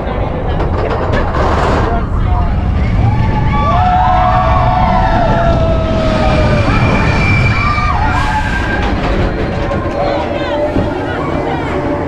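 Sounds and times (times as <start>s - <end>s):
wind rumble on microphone: 0.0s - 12.0s
people screaming: 2.6s - 12.0s.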